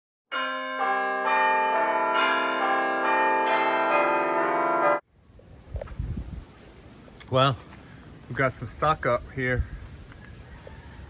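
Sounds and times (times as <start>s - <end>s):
bell-like chimes ringing: 0.3s - 5.0s
low wind-like rumble: 5.1s - 11.0s.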